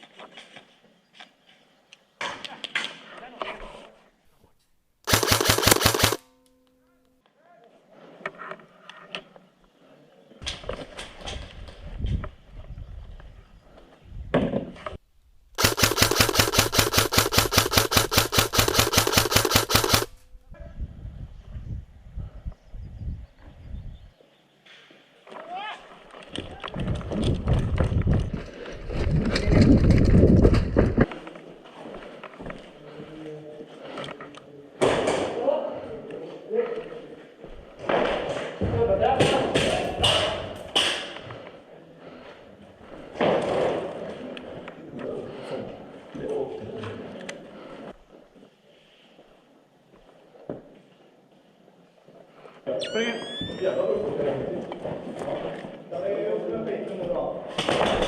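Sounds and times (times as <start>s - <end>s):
electric airsoft gun full-auto burst: 5.1s - 6.3s, 15.6s - 20.2s
scattered clicks: 5.1s - 6.6s, 15.5s - 20.2s
rapid footsteps: 15.6s - 20.2s.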